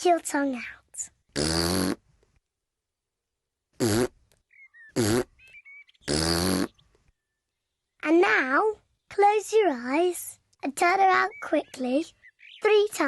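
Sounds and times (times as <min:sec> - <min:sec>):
cartoon piglet hiccups: 0:03.8 - 0:04.2, 0:05.0 - 0:05.3, 0:06.1 - 0:06.8.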